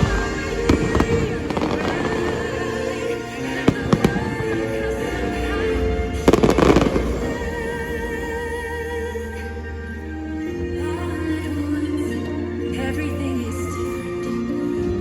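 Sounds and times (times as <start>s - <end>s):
fireworks exploding: 0.0s - 8.8s
orchestral music: 0.0s - 15.0s.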